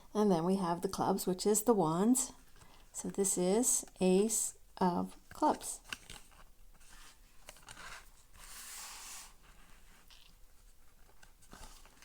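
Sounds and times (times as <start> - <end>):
cards sliding and swishing: 6.2 - 10.4.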